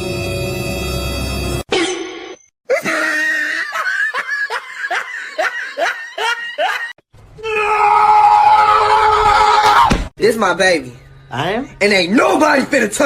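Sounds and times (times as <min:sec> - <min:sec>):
person laughing: 0:02.7 - 0:07.0.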